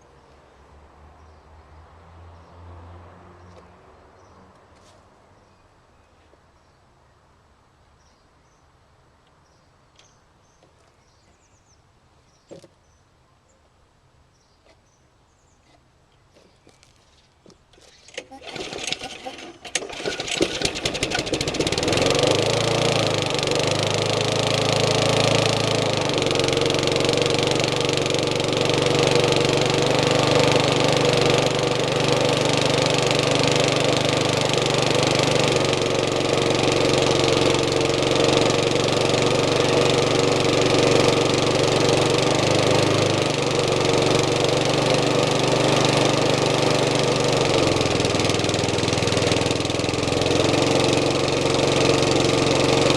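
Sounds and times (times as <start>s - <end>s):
lawnmower engine running: 17.7s - 52.9s.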